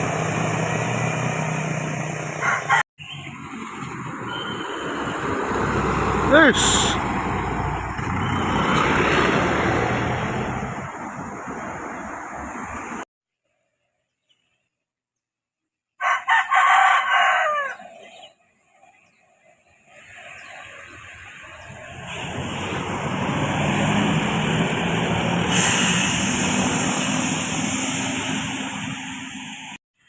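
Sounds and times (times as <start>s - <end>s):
bus engine and tyre noise: 0.0s - 13.1s, 17.4s - 29.8s
rooster crowing: 2.4s - 2.8s, 16.0s - 18.0s.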